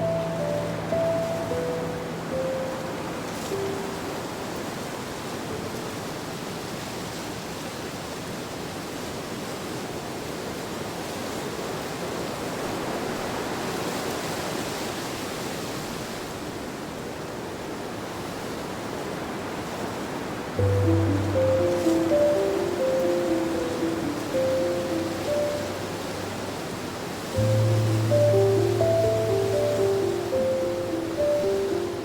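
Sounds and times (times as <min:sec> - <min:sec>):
rushing nature ambience: 0:00.0 - 0:08.9, 0:19.2 - 0:32.0.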